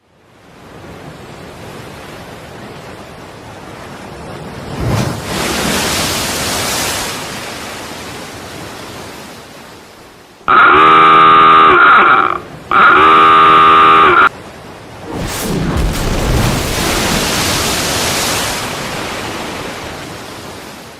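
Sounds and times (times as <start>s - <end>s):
wind: 0.0s - 20.9s
ship's whistle deep blasts: 10.5s - 14.3s
sea surge: 10.5s - 20.9s.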